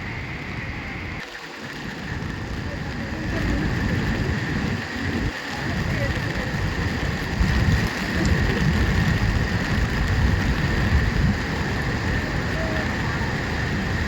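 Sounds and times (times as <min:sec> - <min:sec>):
thin high whine: 0:00.0 - 0:06.6
waterfall roaring: 0:00.0 - 0:14.0.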